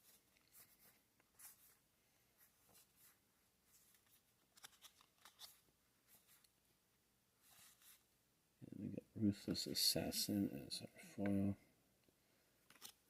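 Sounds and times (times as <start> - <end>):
trading cards rustling and sliding: 0.0 - 6.6, 7.4 - 8.1, 12.6 - 13.0.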